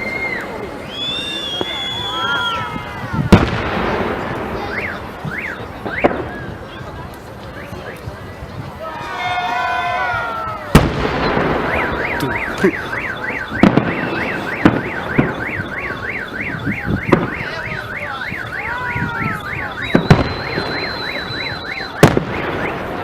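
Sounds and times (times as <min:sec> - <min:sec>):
fireworks banging: 0:00.0 - 0:23.0
car alarm warbling: 0:04.6 - 0:06.6, 0:11.1 - 0:23.0.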